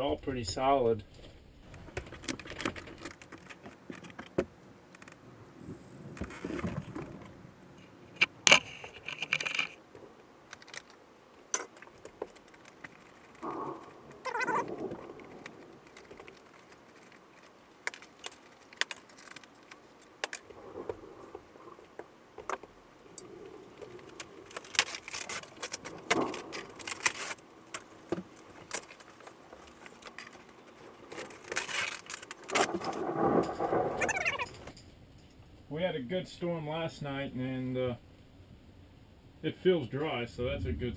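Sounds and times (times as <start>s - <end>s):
scraping and rustling: 1.6s - 34.8s
ceiling board snapping and crackling: 1.7s - 34.8s.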